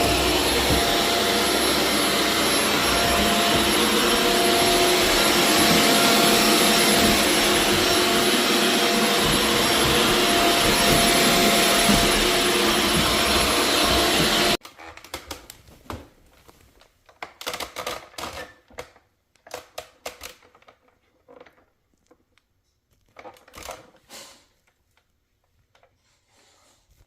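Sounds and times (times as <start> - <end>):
loud steady machine noise: 0.0 - 14.6.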